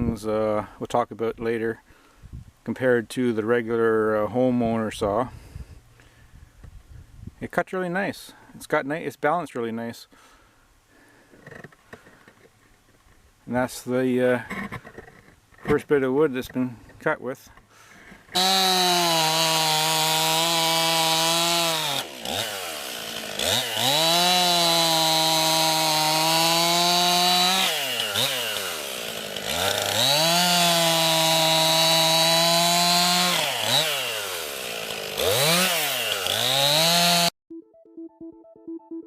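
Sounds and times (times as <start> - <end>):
chainsaw revving: 18.3 - 37.3.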